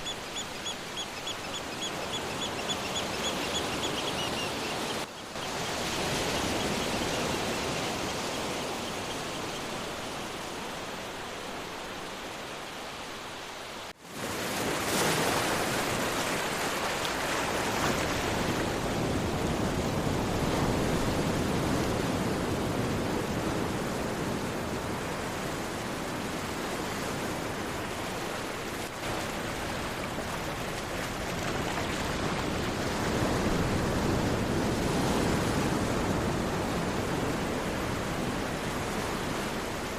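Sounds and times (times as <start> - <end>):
sea waves washing on shore: 0.0 - 39.9.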